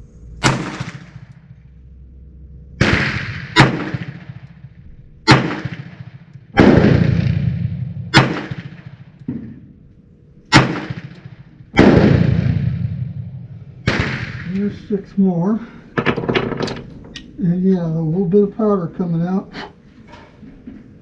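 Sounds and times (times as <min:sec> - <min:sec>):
revolver shots echoing: 0:00.4 - 0:01.6, 0:02.8 - 0:09.8, 0:10.5 - 0:15.0.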